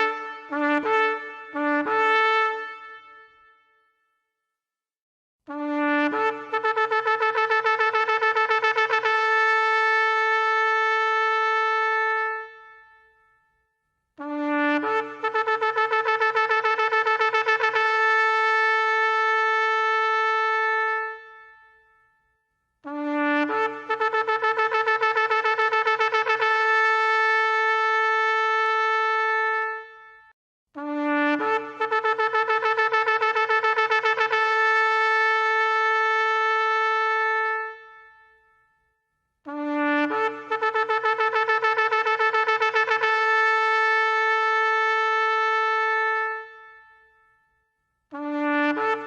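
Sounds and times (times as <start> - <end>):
shofar blasts: 0.0 - 3.7, 48.1 - 49.0.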